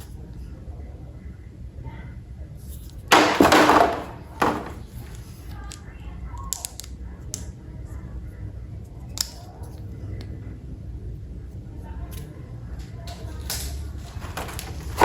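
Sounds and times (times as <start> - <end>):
light plastic clicks: 5.1 - 7.6.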